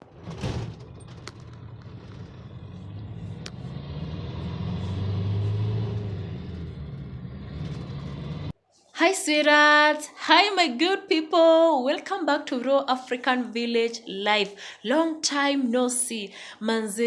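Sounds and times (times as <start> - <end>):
vehicle engine rumble: 0.0 - 8.6.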